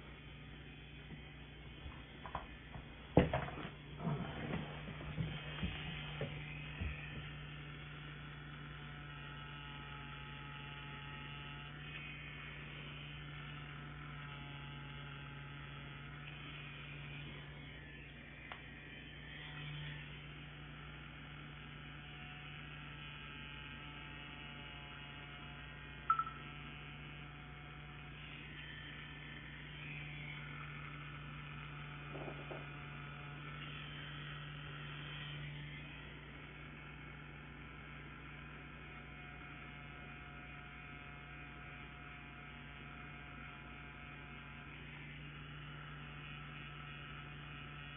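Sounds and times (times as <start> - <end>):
tattoo pen buzzing: 0.0 - 47.9.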